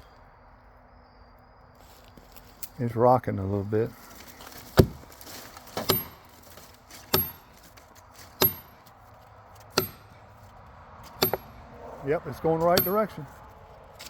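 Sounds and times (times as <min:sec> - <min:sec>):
hammer striking steel wedge: 0:05.8 - 0:06.2, 0:07.1 - 0:07.5, 0:08.4 - 0:08.8, 0:09.8 - 0:10.2, 0:11.1 - 0:11.6, 0:12.6 - 0:13.2.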